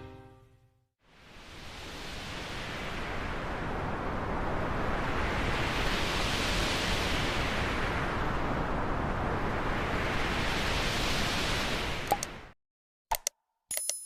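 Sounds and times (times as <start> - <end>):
filtered noise rush sweeping: 1.2 - 12.0.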